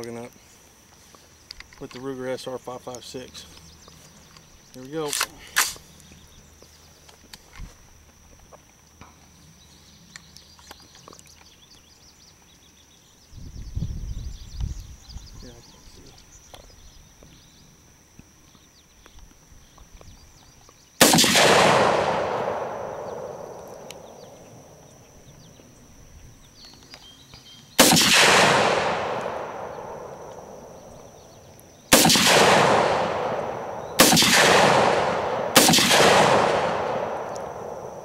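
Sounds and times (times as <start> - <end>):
rifle shots with rolling echo: 21.0 - 24.9, 27.8 - 38.0.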